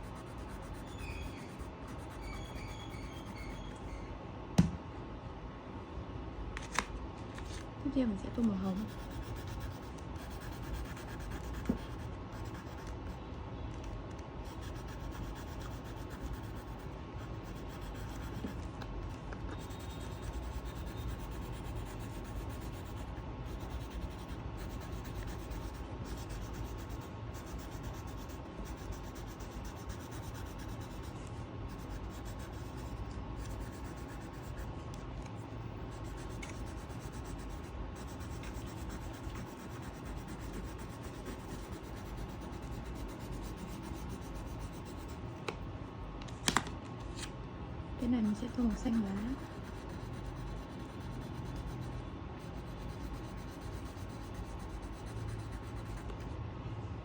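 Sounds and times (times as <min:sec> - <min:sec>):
sharp tap: 0:04.6 - 0:04.8.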